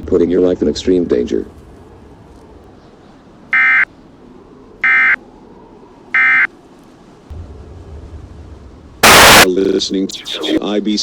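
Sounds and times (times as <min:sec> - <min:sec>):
faint hiss: 0:01.4 - 0:11.0
electronic data bursts: 0:09.0 - 0:09.5, 0:10.1 - 0:10.6.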